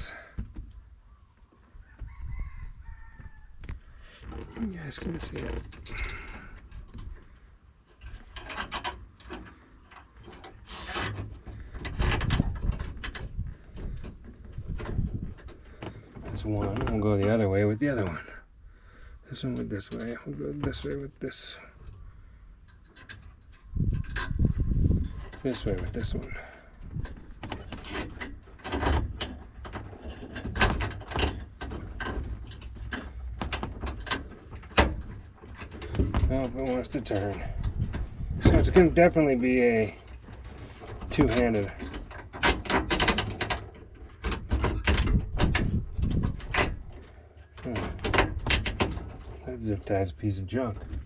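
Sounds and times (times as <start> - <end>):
hands handling wiring: 3.1 - 18.3, 19.4 - 51.0.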